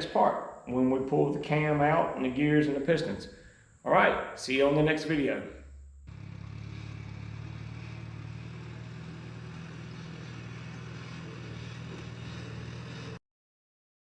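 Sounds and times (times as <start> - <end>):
engine running steadily: 5.7 - 13.2.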